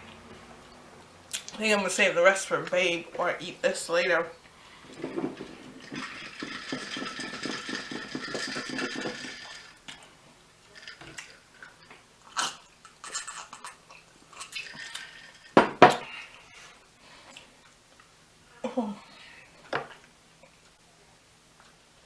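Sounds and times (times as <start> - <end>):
food containers rustling clatter: 2.5 - 11.9.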